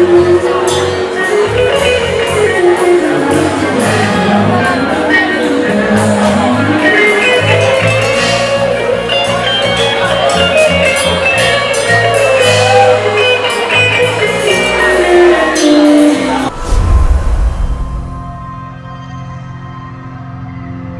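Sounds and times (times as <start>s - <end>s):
low rumble: 16.5s - 18.6s.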